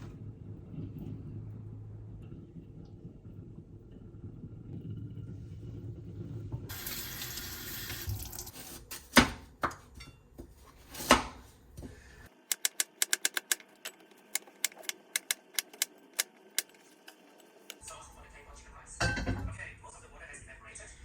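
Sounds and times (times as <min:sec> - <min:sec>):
quick irregular clicks: 0:12.4 - 0:16.7.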